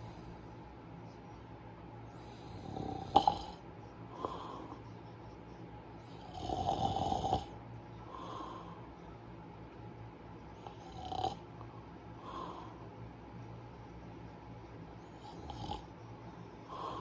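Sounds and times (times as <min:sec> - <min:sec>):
person snoring with rattle: 0:02.2 - 0:03.6, 0:06.1 - 0:07.6, 0:10.6 - 0:11.4, 0:15.2 - 0:15.9.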